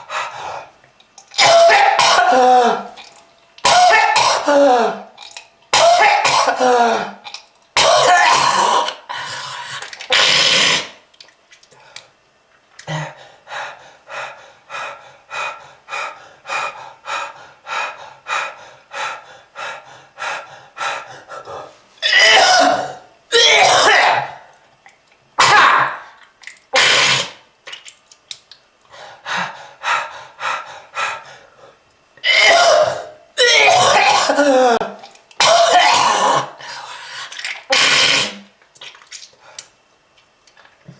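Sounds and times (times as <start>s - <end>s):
person coughing harshly: 1.4s - 2.9s, 3.6s - 5.1s, 5.7s - 7.2s, 7.8s - 8.9s, 22.0s - 24.4s, 25.4s - 26.0s, 32.2s - 36.6s.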